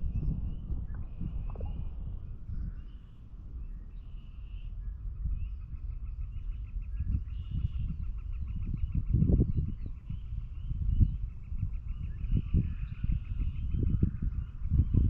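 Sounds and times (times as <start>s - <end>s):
low rumbling noise: 0.0s - 5.0s.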